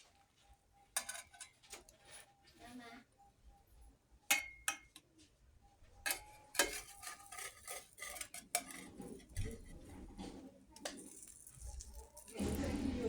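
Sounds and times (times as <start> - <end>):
spatula scraping a frying pan: 6.1 - 13.0.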